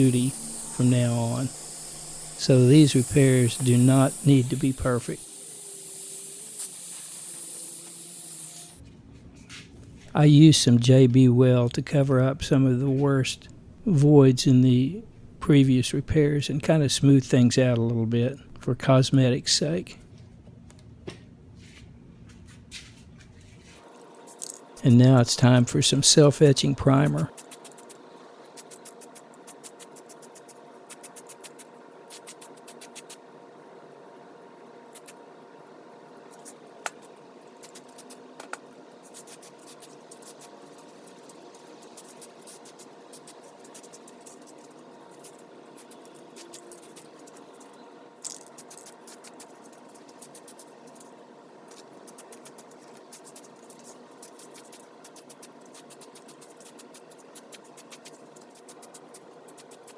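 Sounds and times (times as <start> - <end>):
spray can ball rattling: 0.0 - 8.8, 24.3 - 24.8
steady low hum: 0.0 - 59.9.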